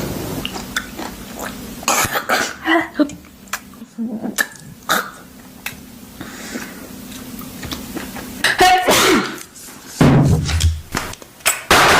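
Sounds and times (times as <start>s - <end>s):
woman sneezing: 8.5s - 9.4s.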